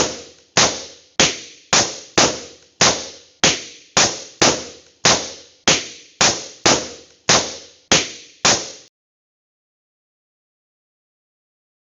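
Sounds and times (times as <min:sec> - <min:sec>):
balloons popping: 0:00.0 - 0:08.9.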